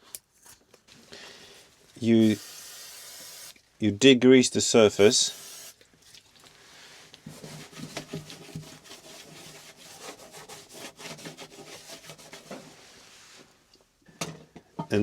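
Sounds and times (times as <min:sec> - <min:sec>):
rag wiping metal panel: 0:07.3 - 0:12.8.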